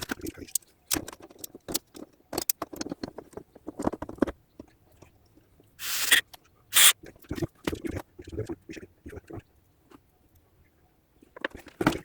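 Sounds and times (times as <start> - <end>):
small metal parts clicking: 0.0 - 3.0.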